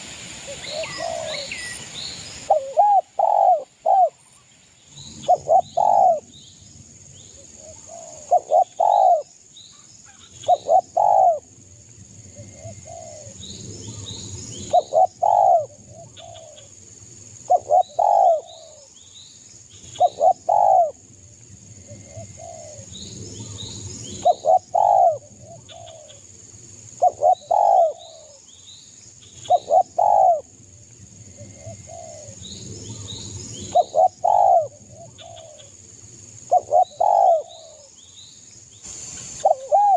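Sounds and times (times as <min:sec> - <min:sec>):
dove cooing: 0:00.5 - 0:01.7, 0:02.5 - 0:04.2, 0:05.2 - 0:06.3, 0:07.6 - 0:09.3, 0:10.4 - 0:11.4, 0:12.4 - 0:13.4, 0:14.7 - 0:16.7, 0:17.5 - 0:18.9, 0:20.0 - 0:21.0, 0:21.9 - 0:26.2, 0:27.0 - 0:28.4, 0:29.4 - 0:30.5, 0:31.4 - 0:32.4, 0:33.0 - 0:35.7, 0:36.5 - 0:37.9, 0:39.3 - 0:39.9
steady high-pitched whine: 0:10.3 - 0:39.9.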